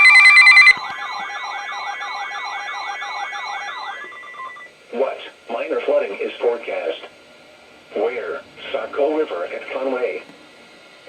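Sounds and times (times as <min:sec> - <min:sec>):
steady high tone: 0:00.0 - 0:04.7
warbling siren-like alert: 0:00.0 - 0:04.7.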